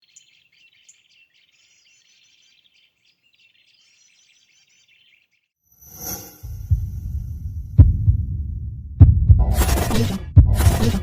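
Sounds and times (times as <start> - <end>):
small birds twittering: 0.0 - 5.6.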